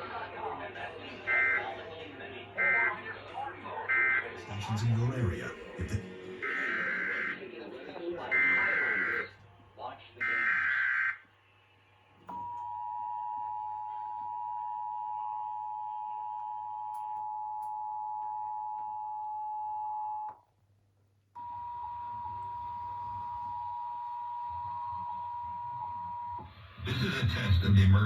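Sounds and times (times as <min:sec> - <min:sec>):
two-tone alert alarm: 0:01.3 - 0:01.7, 0:03.9 - 0:04.4, 0:06.4 - 0:07.4, 0:08.2 - 0:09.4, 0:10.2 - 0:11.2.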